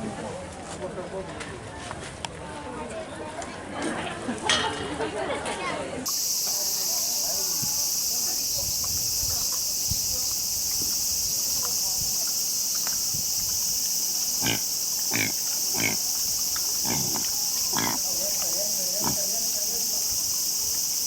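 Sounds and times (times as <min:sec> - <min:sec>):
high insect drone: 0:06.1 - 0:21.0
animal giving harsh calls: 0:14.4 - 0:16.1, 0:16.8 - 0:18.3.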